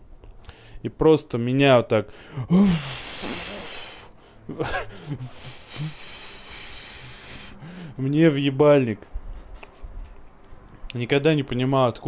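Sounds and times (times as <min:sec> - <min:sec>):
man imitating wind with mouth: 0:02.5 - 0:04.2, 0:05.2 - 0:07.6.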